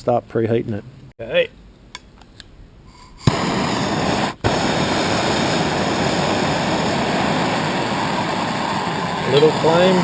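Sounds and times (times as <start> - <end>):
blowtorch flame rushing: 3.1 - 10.0
blowtorch lighting pop: 3.2 - 10.0.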